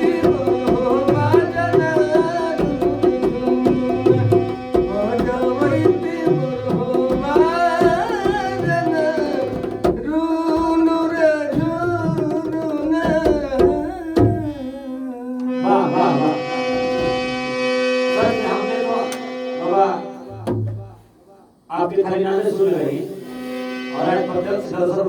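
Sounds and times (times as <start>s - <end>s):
tabla drum: 0.0s - 15.0s, 20.3s - 21.0s
man singing: 0.0s - 17.2s
sustained chord: 15.4s - 20.4s.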